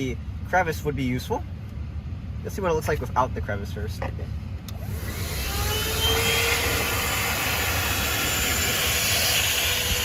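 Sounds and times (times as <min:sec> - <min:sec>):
handheld vacuum running: 0:04.8 - 0:10.0.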